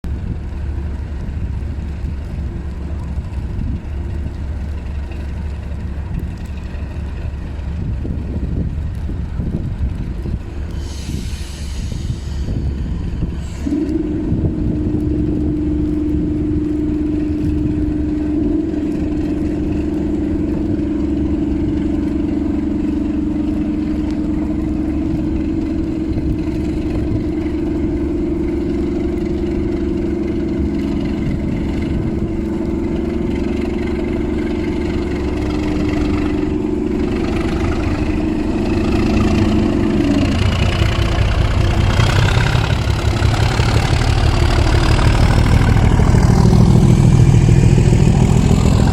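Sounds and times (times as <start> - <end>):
diesel locomotive humming: 0.0 - 48.9
high whistle rising in pitch: 10.8 - 48.9.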